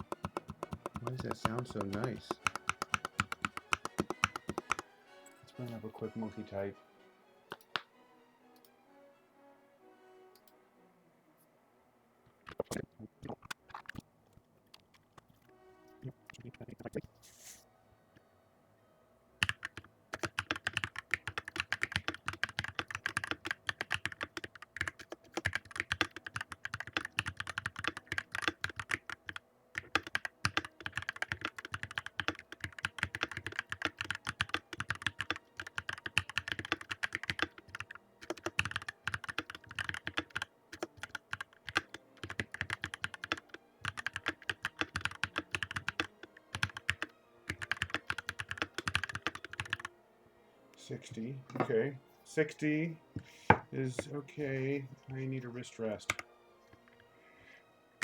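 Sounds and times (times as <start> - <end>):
mechanical keyboard typing: 0.0 - 4.8, 19.4 - 49.9.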